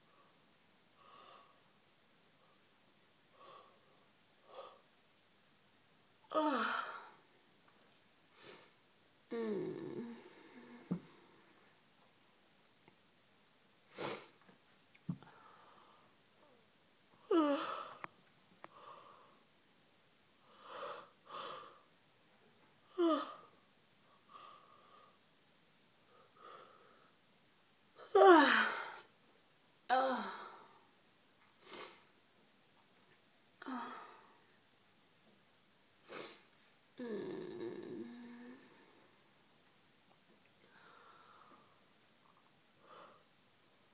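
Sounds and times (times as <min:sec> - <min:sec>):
woman yawning: 0:29.9 - 0:30.6.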